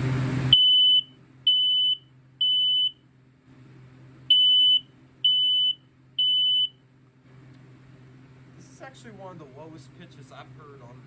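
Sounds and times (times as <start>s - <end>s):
smoke alarm beeps: 0.5s - 3.0s, 4.3s - 6.8s.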